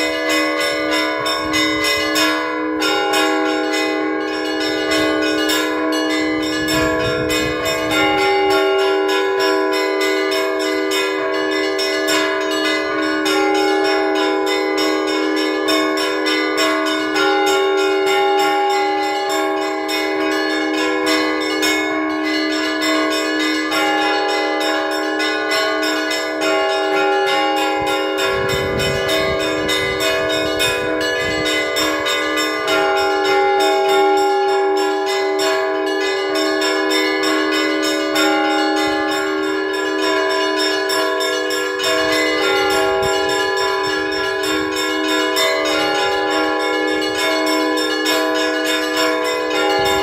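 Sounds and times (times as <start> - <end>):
church bells pealing: 0.0 - 50.0.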